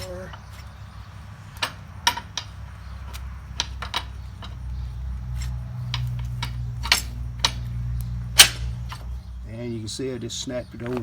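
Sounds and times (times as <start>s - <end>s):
sharp metal clinks and knocks: 1.6s - 9.2s.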